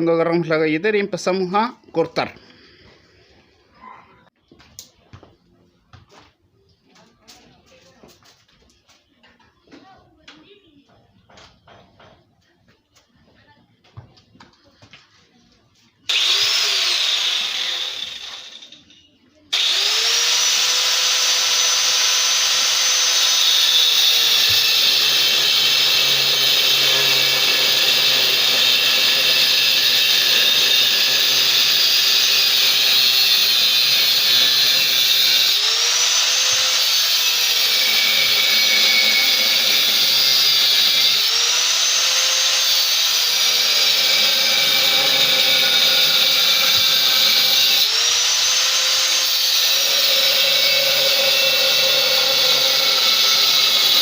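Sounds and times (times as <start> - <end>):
angle grinder cutting tube: 16.1 - 54.0.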